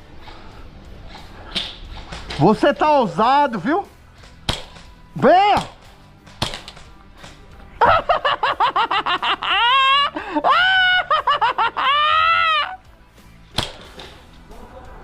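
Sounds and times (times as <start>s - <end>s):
sharp snap: 4.2s - 5.0s, 5.6s - 7.4s, 13.5s - 14.2s
man yelling: 5.2s - 5.7s
man laughing: 7.8s - 12.8s.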